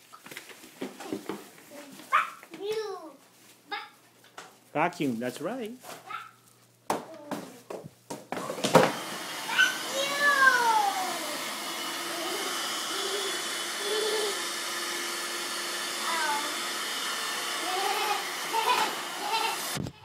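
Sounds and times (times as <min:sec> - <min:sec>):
vacuum cleaner running: 0:08.3 - 0:19.8.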